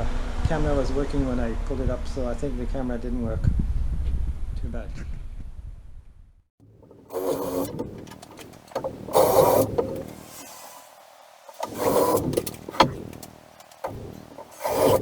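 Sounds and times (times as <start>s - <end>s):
power tool motor whirring: 6.7s - 15.0s.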